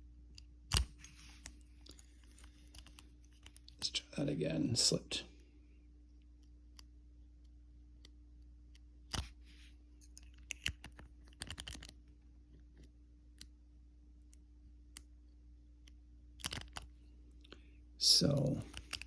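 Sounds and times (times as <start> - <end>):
padlock pins clicking: 0.7 - 3.8, 10.1 - 11.9, 16.4 - 16.9, 18.6 - 19.0.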